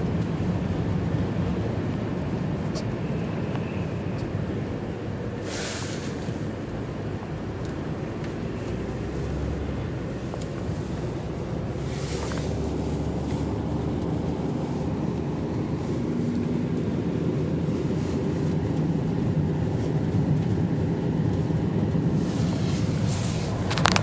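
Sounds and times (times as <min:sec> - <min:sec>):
vehicle engine and tyre rumble: 0:00.0 - 0:24.0
brief hiss: 0:05.4 - 0:06.4.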